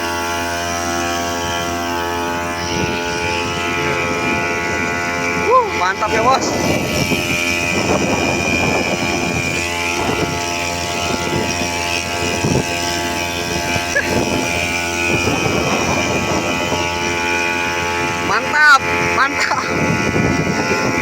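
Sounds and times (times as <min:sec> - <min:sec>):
small boat engine running: 0:00.0 - 0:21.0.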